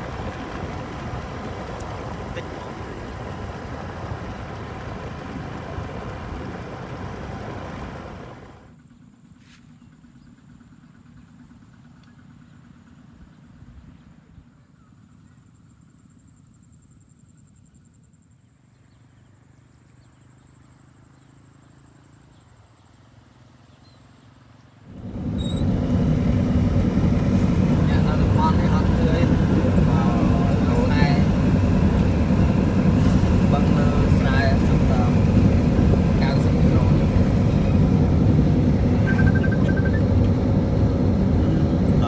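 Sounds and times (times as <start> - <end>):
loud steady rumble: 0.0 - 8.8, 24.9 - 42.0
faint low hum: 24.9 - 42.0.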